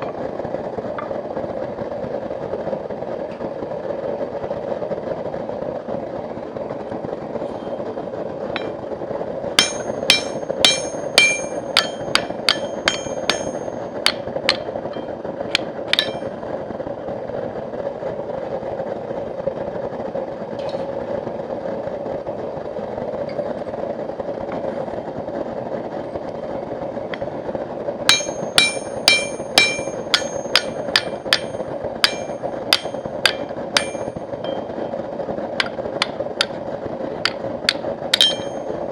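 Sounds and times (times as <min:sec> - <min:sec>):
steady rushing noise: 0:00.0 - 0:38.9
hammer striking steel on anvil: 0:09.6 - 0:16.3, 0:28.1 - 0:34.6, 0:37.3 - 0:38.6.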